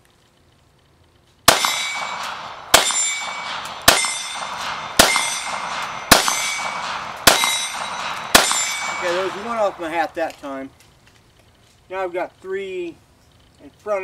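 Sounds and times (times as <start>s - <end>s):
steel target ringing: 1.5s - 10.3s
pistol shots: 1.5s - 10.6s.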